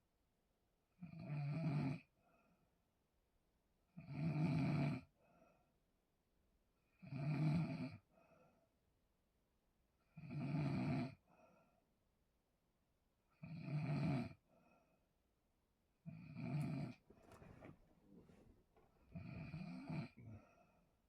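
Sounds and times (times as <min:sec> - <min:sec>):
soft breaths: 0:16.4 - 0:21.0.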